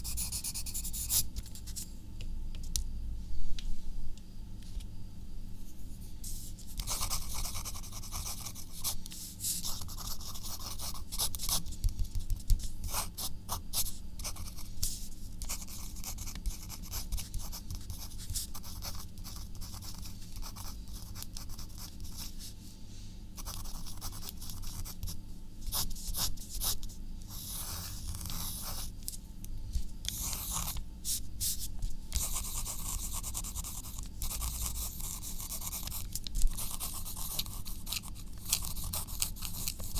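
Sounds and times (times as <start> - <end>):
pen scratching on paper: 0.0 - 1.2, 6.8 - 14.7, 15.4 - 22.3, 25.7 - 28.9, 30.1 - 39.9.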